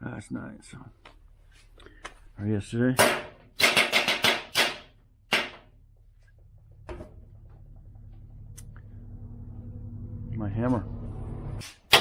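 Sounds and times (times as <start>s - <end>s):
low steady hum: 4.9s - 11.6s.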